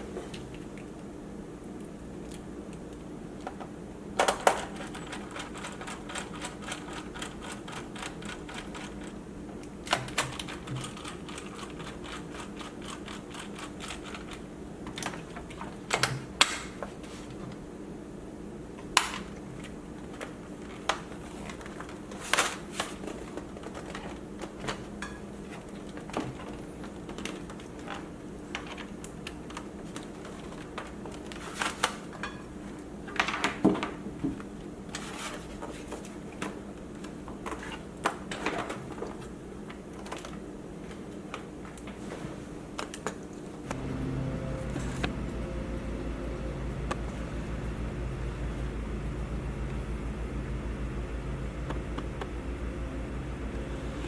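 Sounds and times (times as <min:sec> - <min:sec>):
low hum: 0:43.7 - 0:54.0.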